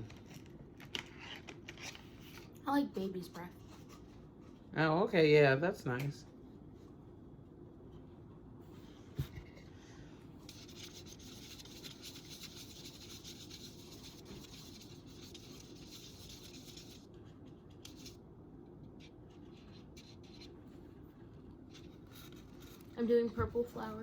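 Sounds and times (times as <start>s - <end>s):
paintbrush scratching on wood: 10.5s - 18.2s.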